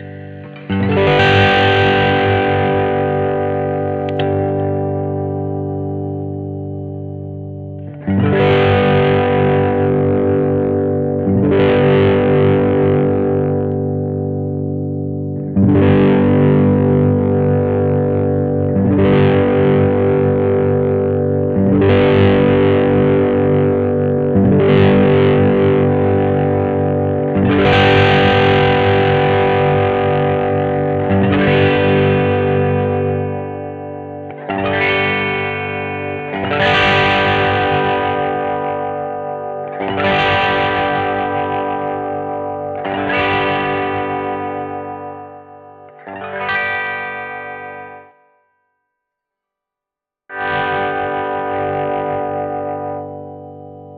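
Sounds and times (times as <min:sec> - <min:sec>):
electric guitar distorted chords: 0:00.0 - 0:48.7, 0:50.3 - 0:53.9.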